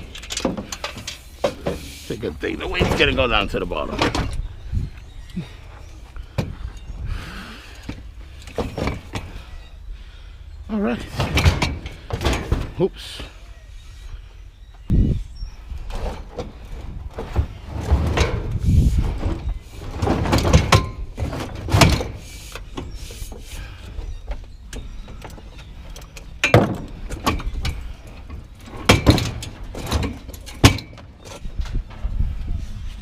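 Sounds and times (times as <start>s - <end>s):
scrap metal clanking and scraping: 0.0s - 4.5s, 7.8s - 9.5s, 11.0s - 12.9s, 15.8s - 33.0s.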